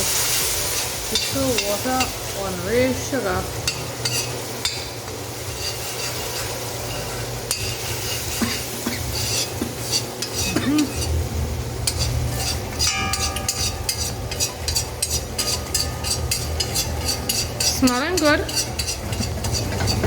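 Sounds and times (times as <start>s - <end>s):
curry sizzling in oil: 0.0s - 20.0s
steady low hum: 0.0s - 20.0s
spoon scraping a pot: 3.6s - 4.9s, 5.5s - 11.2s, 11.8s - 20.0s.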